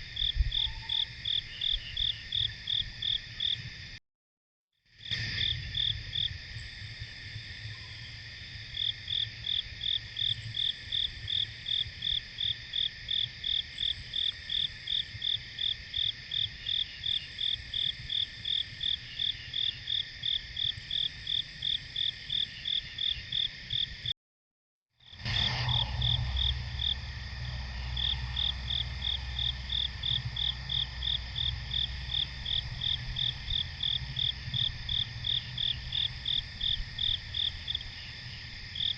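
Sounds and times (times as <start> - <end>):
cricket chirping: 0.0 - 4.0, 4.9 - 24.1, 25.0 - 38.9
insects trilling: 0.0 - 4.0, 4.9 - 24.1, 25.0 - 38.9
brief low rumble: 25.2 - 31.7.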